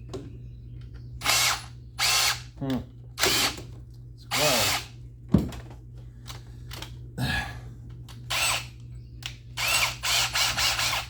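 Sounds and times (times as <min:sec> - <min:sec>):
power drill cutting steel: 0:09.6 - 0:11.0.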